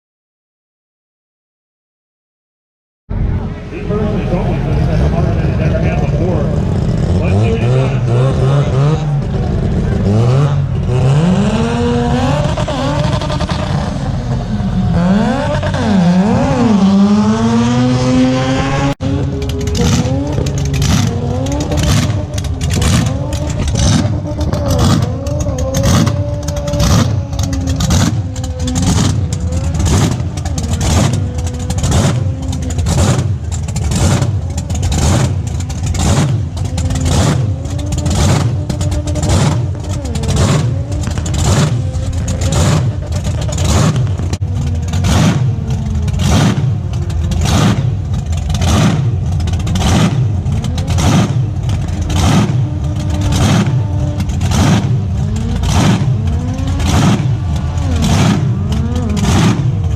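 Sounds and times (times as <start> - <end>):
car engine revving: 3.1 - 59.9.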